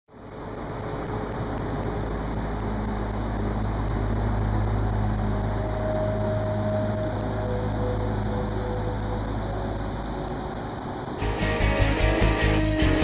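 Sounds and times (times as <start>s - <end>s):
low motor hum: 0.1s - 13.0s
rushing noise: 0.1s - 13.0s
faint high tone: 5.4s - 10.6s.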